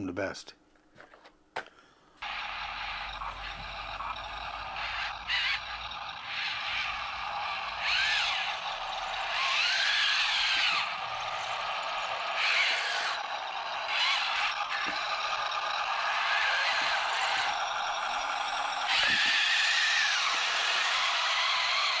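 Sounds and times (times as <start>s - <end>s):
toy tank motors whining: 2.2s - 22.0s.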